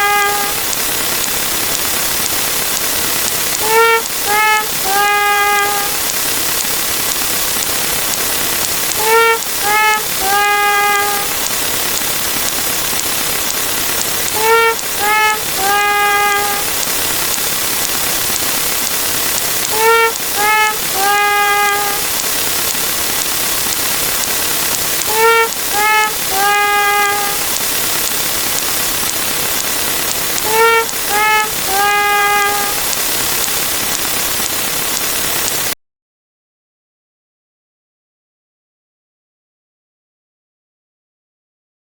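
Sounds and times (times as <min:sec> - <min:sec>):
sad trumpet falling notes: 0:00.0 - 0:00.6, 0:03.6 - 0:06.0, 0:09.0 - 0:11.5, 0:14.3 - 0:16.8, 0:19.7 - 0:22.1, 0:25.1 - 0:27.5, 0:30.4 - 0:32.9
loud hiss: 0:00.0 - 0:35.8.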